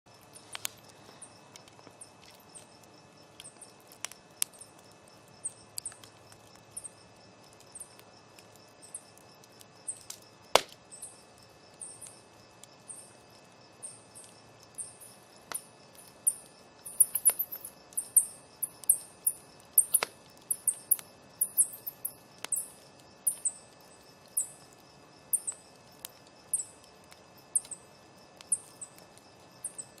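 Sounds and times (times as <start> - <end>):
burning wood popping: 0.1 - 13.3, 14.1 - 18.1, 18.7 - 24.9
campfire crackling: 0.1 - 30.0
insect trill: 0.1 - 30.0.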